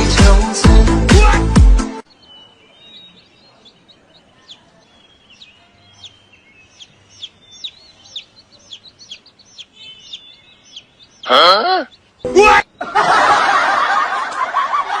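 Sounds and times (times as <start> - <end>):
faint bird chirps: 2.1 - 13.0.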